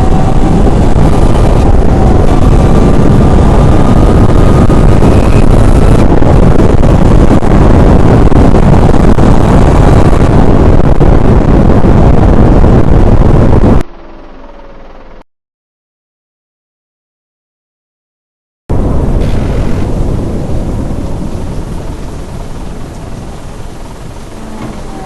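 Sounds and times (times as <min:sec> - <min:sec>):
distorted tornado wind rush: 0:00.0 - 0:15.2, 0:18.7 - 0:25.0.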